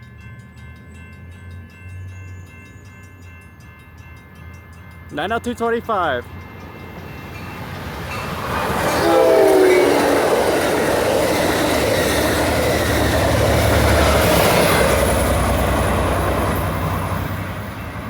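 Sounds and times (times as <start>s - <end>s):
train wheels rumbling on rails: 0.0s - 18.0s
train horn blast: 8.8s - 11.2s.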